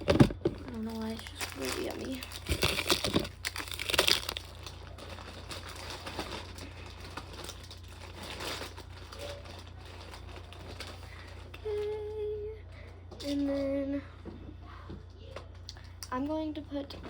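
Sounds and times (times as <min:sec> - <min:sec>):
plastic snack packets crinkling: 0:00.0 - 0:12.1.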